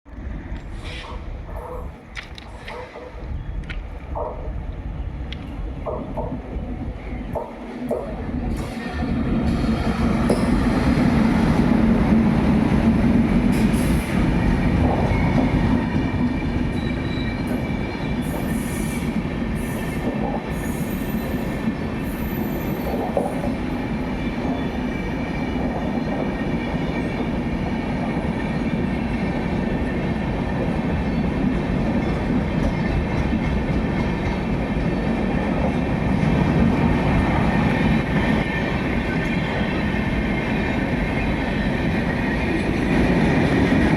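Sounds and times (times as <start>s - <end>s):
train wheels rumbling on rail: 0.1s - 43.9s.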